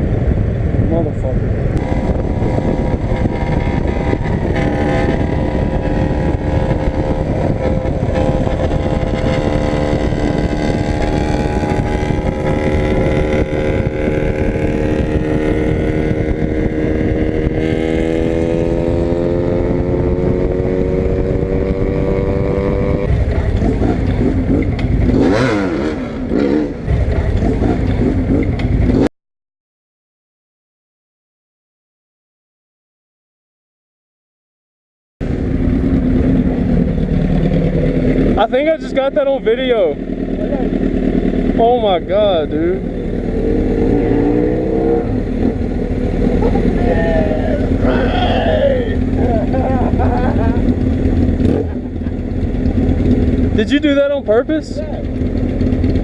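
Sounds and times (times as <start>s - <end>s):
wind rush: 0.0s - 26.2s
motorcycle engine accelerating: 0.0s - 29.1s, 35.2s - 56.0s.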